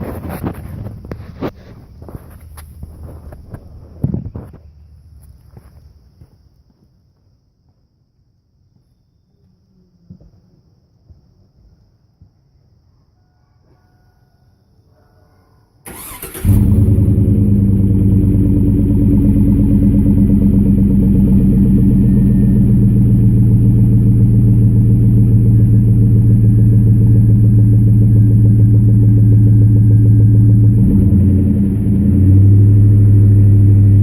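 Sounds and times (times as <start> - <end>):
engine deep idle: 16.0 - 34.0.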